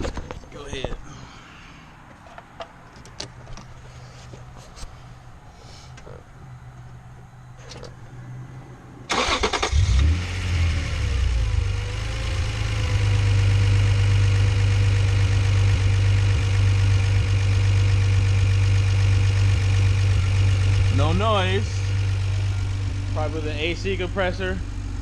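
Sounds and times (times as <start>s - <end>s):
car engine revving and idling: 7.8s - 25.0s
engine starter cranking: 9.1s - 10.1s.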